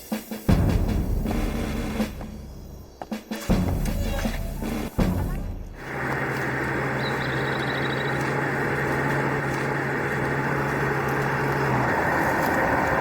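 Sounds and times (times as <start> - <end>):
vehicle engine running: 3.5 - 13.0.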